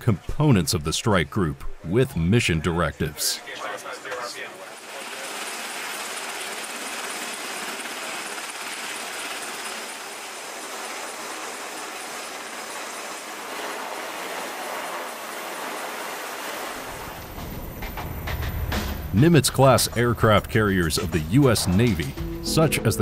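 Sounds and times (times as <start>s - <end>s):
steady rushing noise: 4.7s - 22.2s.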